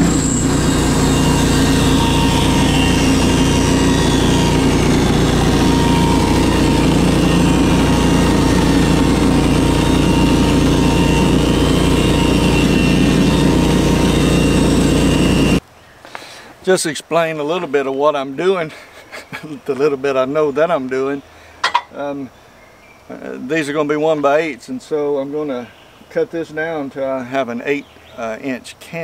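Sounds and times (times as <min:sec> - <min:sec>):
bandsaw mill engine running: 0:00.0 - 0:15.6.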